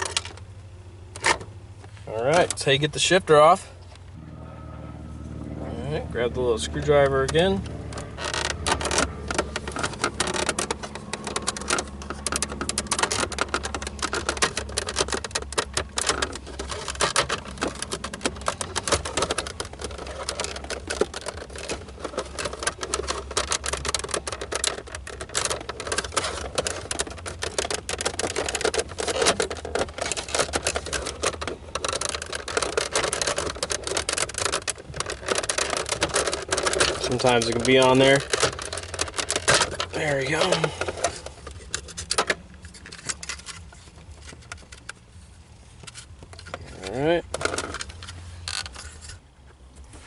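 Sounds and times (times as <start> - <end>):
steady low hum: 0.0 - 50.0.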